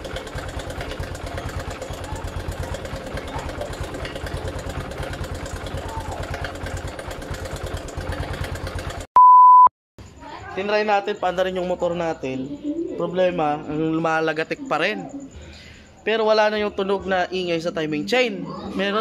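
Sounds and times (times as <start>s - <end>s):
motorcycle engine idling with clatter: 0.0s - 9.1s
loud steady beep: 9.2s - 9.7s.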